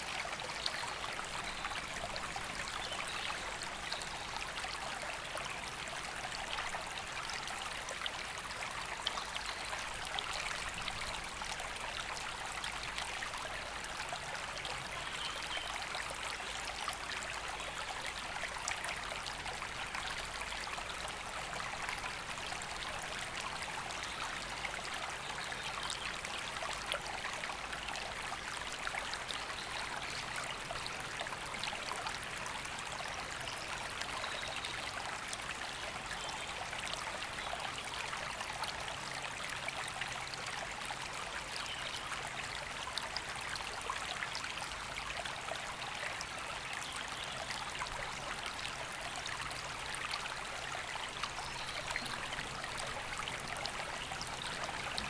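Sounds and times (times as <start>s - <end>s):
river flowing over stones: 0.0s - 55.0s.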